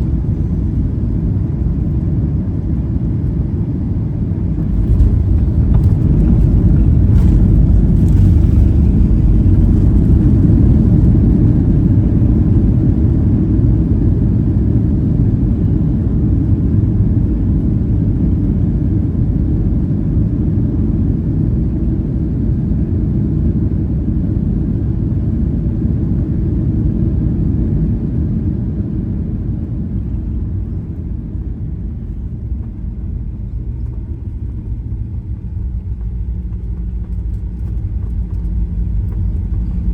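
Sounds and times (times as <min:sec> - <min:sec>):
airplane cabin rumble: 0:00.0 - 0:39.9.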